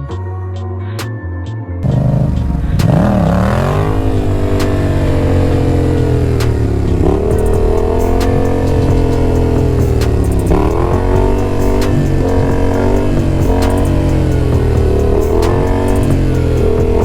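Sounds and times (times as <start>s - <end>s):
motorcycle engine under throttle: 1.8s - 17.0s
sharp clicks: 6.4s - 14.5s.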